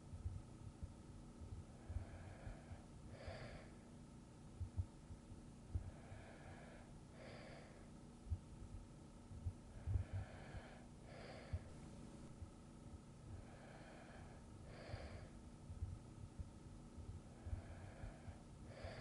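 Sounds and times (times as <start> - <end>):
faint steady hum: 0.0 - 19.0
person breathing asleep: 1.7 - 4.0, 5.7 - 8.0, 9.6 - 11.8, 13.3 - 15.4, 17.2 - 19.0.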